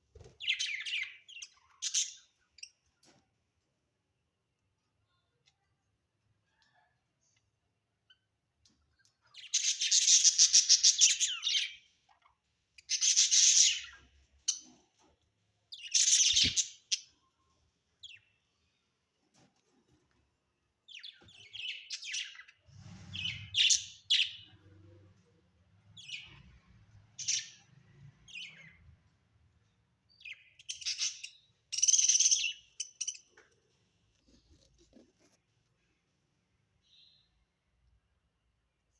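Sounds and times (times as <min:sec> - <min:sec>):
budgerigars chirping and chattering: 0:00.4 - 0:02.4, 0:09.4 - 0:14.7, 0:27.2 - 0:27.7, 0:30.2 - 0:33.3.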